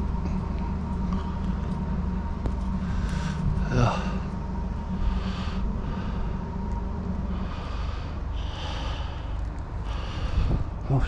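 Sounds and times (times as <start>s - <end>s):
steady low rumble: 0.0s - 11.0s
person breathing: 4.9s - 6.6s, 7.2s - 10.8s.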